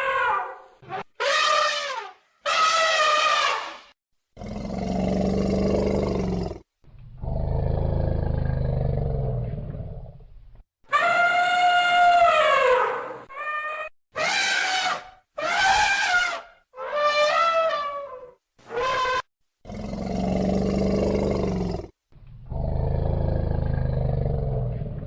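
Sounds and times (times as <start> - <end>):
elephant trumpeting: 0.0 - 3.8, 10.9 - 19.3
elephant low roars: 19.7 - 25.0.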